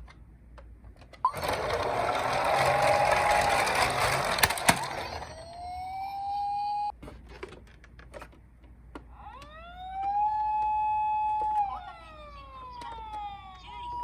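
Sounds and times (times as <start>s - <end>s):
toy electronic siren wailing: 4.8s - 6.9s, 9.2s - 14.0s.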